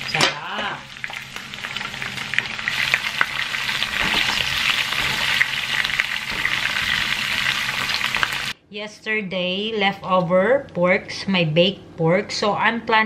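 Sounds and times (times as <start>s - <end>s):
vegetables sizzling in oil: 0.0s - 8.6s.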